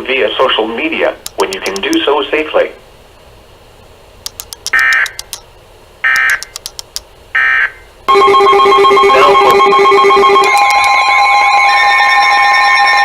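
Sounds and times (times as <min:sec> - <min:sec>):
clicks: 0:01.2 - 0:02.1, 0:04.2 - 0:05.5, 0:06.1 - 0:07.1, 0:10.4 - 0:11.0
electronic alert tone: 0:08.1 - 0:11.8
pulsing beep: 0:08.1 - 0:12.3.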